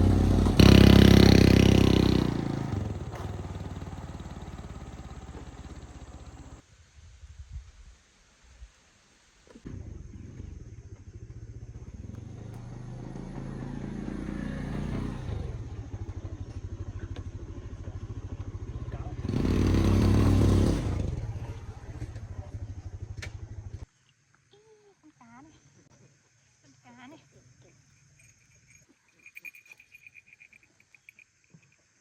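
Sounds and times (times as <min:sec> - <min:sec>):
small petrol engine running: 0:00.0 - 0:06.6, 0:11.2 - 0:23.8.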